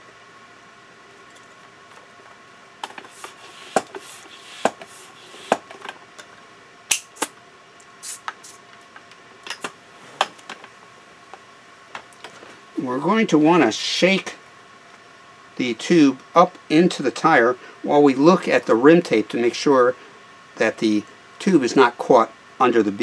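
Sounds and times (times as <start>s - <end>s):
clicks and knocks of bicycle pump: 2.8s - 6.0s.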